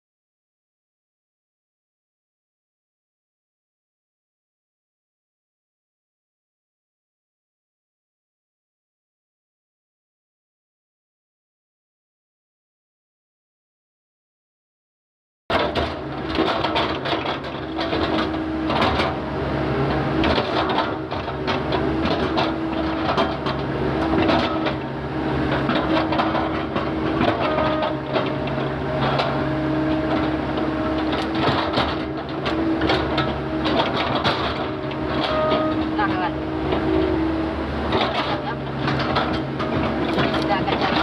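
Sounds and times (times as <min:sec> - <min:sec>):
knocks and clatter: 0:15.5 - 0:19.3, 0:19.9 - 0:37.1, 0:37.8 - 0:41.0
excavator diesel engine running: 0:15.5 - 0:41.0.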